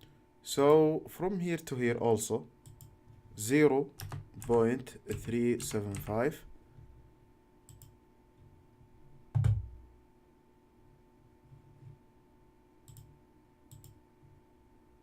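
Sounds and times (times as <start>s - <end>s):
low electrical hum: 0.0s - 15.0s
computer mouse clicks: 2.6s - 2.9s, 7.7s - 8.0s, 12.8s - 13.1s, 13.7s - 14.0s.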